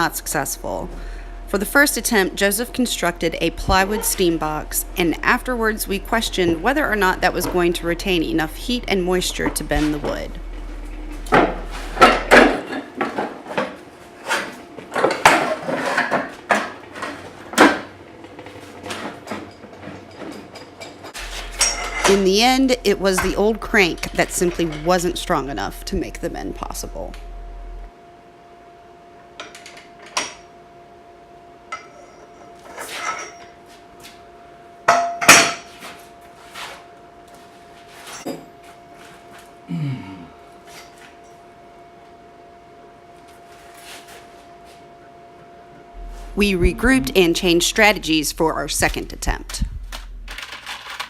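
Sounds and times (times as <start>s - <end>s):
faint steady hum: 0.0s - 19.6s, 20.6s - 51.0s
knocks and scraping clatters: 3.6s - 25.2s
brief low sound: 46.0s - 50.4s.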